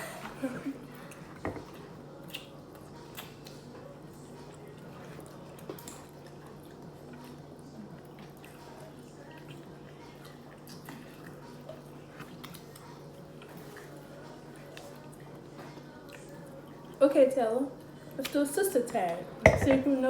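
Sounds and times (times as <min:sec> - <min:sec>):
chewing: 0:01.0 - 0:17.0.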